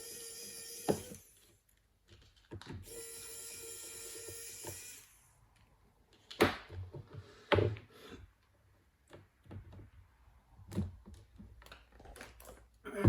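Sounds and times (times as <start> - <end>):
electric screwdriver motor whirring: 0.0 - 1.4, 2.9 - 5.3
plastic parts clicking and knocking: 1.4 - 2.8, 9.0 - 12.8.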